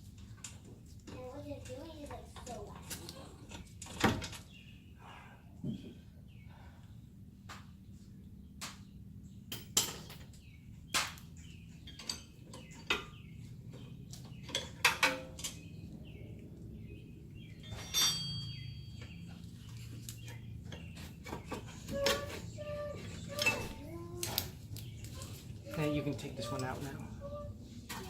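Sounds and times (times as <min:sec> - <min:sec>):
metal tools clinking: 0:11.8 - 0:13.2, 0:17.5 - 0:19.4, 0:20.8 - 0:23.9.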